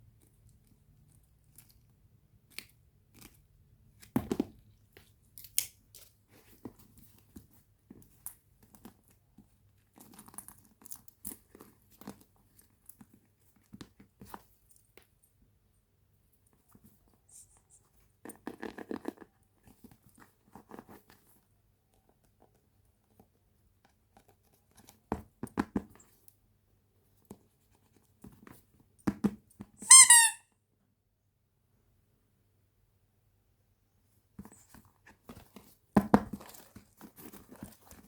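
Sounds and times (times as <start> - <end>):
high squeak: 29.8 - 30.4.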